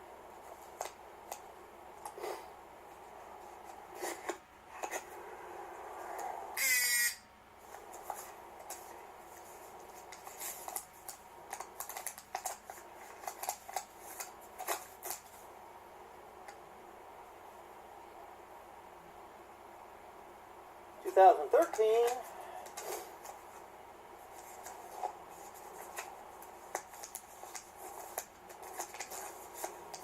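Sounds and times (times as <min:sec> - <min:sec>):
papers being leafed through: 0:07.6 - 0:15.5, 0:21.6 - 0:30.0.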